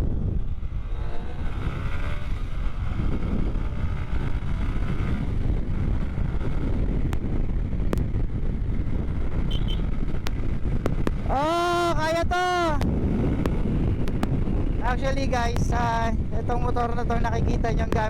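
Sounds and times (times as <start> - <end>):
motorcycle engine running: 0.0 - 18.0
wind buffeting microphone: 0.0 - 18.0
sharp ticks: 9.5 - 11.2, 12.7 - 14.4.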